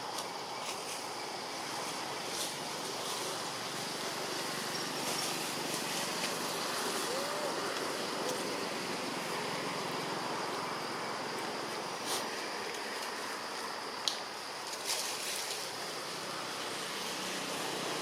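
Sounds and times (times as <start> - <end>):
road traffic rushing: 1.2 - 13.5, 15.9 - 18.0.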